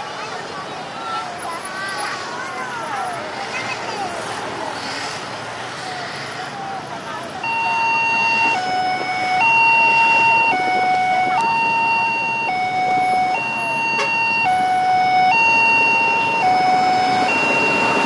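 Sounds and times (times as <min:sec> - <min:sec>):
road noise: 0:00.0 - 0:18.0
two-tone emergency siren: 0:07.4 - 0:18.0.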